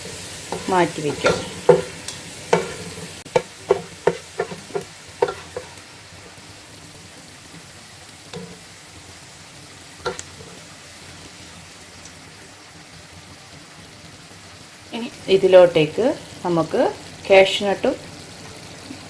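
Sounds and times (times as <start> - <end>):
ghee sizzling softly: 0.0 - 19.0
spoon knocking against pan: 0.5 - 5.8, 8.3 - 8.7, 10.0 - 10.6.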